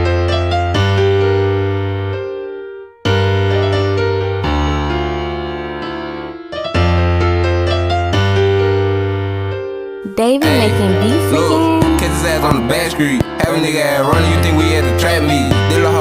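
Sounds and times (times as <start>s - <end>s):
keyboard chords: 0.0s - 16.0s
deep bass: 10.4s - 16.0s.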